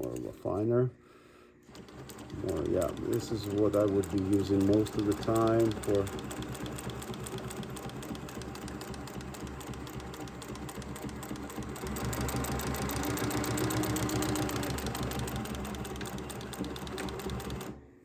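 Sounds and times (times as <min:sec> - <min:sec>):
sewing machine stitching leather: 0:01.6 - 0:17.8.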